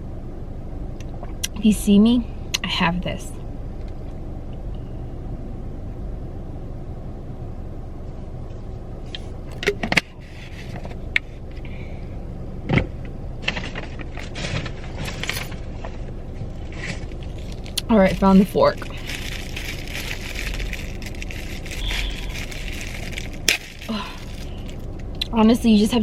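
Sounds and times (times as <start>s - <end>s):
low car cabin hum: 0.0s - 26.0s
rustling and clattering: 13.4s - 25.1s.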